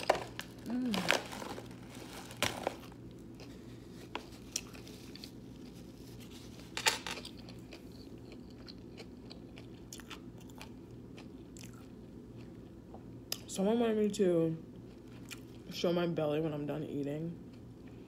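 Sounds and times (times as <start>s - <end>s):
person chewing crunchy sandwich: 0.0s - 12.9s, 14.8s - 15.6s
steady low hum: 0.0s - 18.0s.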